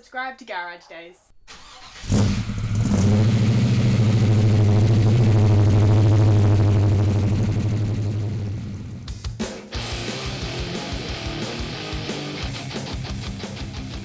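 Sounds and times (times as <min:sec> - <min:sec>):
car engine idling: 0:01.8 - 0:09.2.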